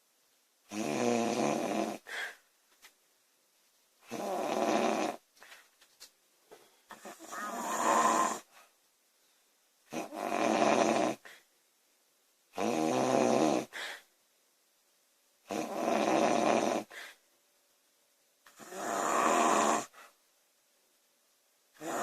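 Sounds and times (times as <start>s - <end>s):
woman snoring loudly: 0.7s - 2.1s, 4.1s - 5.2s, 6.9s - 8.5s, 9.9s - 11.3s, 12.6s - 13.8s, 15.5s - 16.9s, 18.5s - 20.0s, 21.8s - 22.0s.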